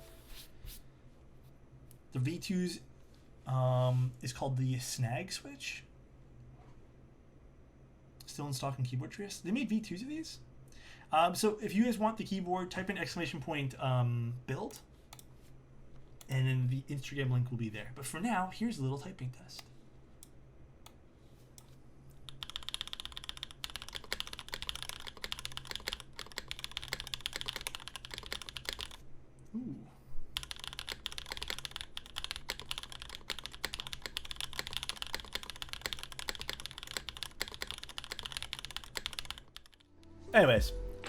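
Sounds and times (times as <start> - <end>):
mechanical keyboard typing: 22.3 - 29.0, 30.4 - 39.9.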